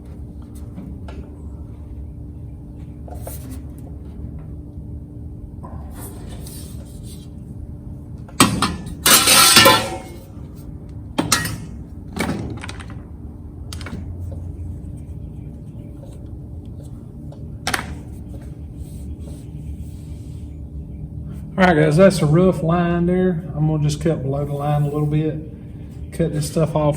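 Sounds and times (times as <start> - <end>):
low hum: 0.0 - 12.2
metal panels clanking: 8.4 - 10.3
rattling metal scrape: 8.8 - 10.2.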